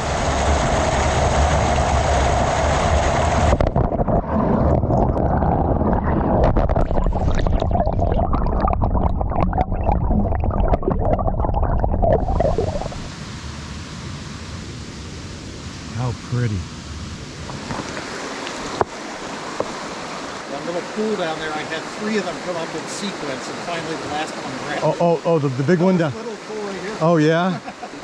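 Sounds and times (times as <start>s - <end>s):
rushing stream water: 0.0s - 4.6s, 12.2s - 28.0s.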